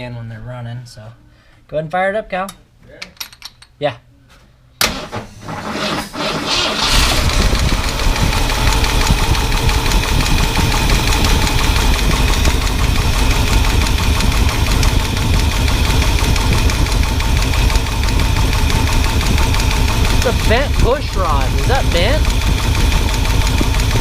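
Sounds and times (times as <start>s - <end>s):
misfiring engine running: 5.0s - 24.0s
fast valvetrain ticking: 6.5s - 24.0s.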